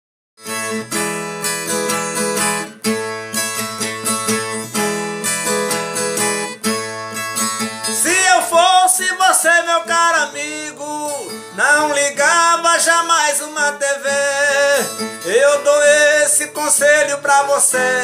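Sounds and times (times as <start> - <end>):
guitar strummed chords: 0.4 - 18.0
man singing: 7.8 - 18.0.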